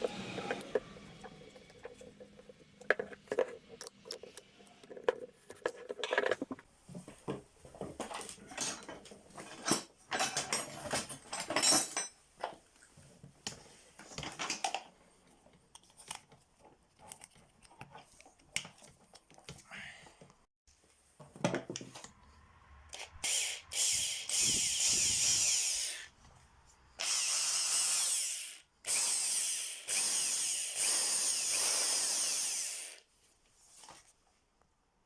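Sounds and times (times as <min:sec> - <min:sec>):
hard parts clinking and scraping: 0:00.0 - 0:06.7, 0:07.8 - 0:12.6, 0:14.0 - 0:19.3.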